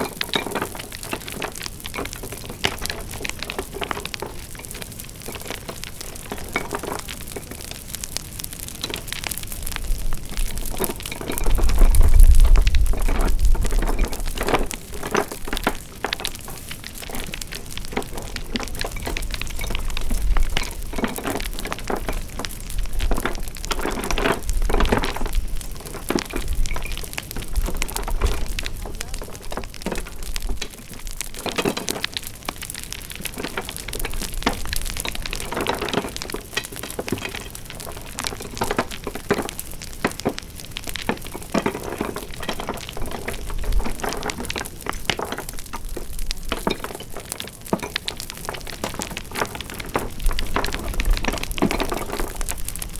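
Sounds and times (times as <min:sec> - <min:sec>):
wood fire crackling: 0:00.0 - 0:52.9.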